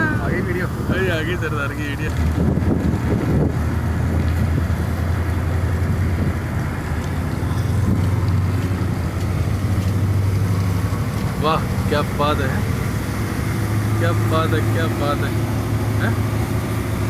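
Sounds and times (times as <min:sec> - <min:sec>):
ship machinery humming: 0:00.0 - 0:17.0
wind noise on microphone: 0:01.8 - 0:11.1.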